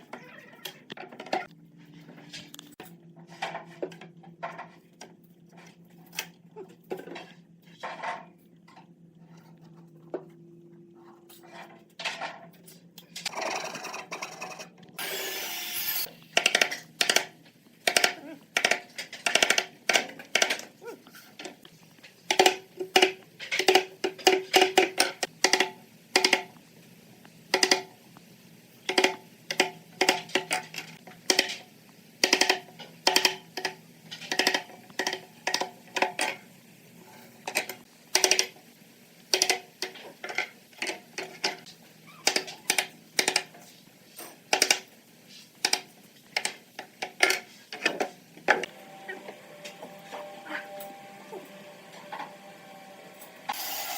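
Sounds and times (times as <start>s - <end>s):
whirring hissing machine: 15.0s - 16.2s, 48.6s - 53.9s.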